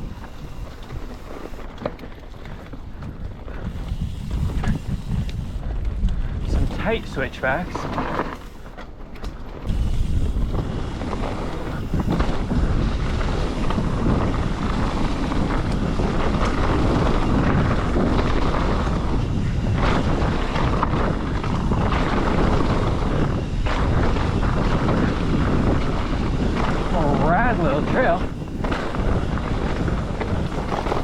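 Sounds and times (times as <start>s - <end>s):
tyres rolling on dirt and rock: 0.0s - 31.0s
wind rushing over microphone: 0.0s - 31.0s
bike knocks: 6.6s - 12.6s, 28.1s - 29.2s, 30.2s - 31.0s.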